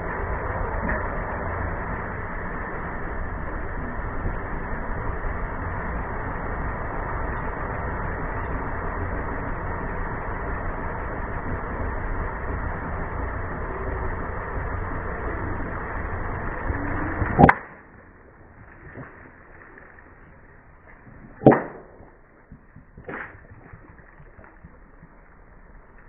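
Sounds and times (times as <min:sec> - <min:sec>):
object cracking under car: 0:17.1 - 0:26.0.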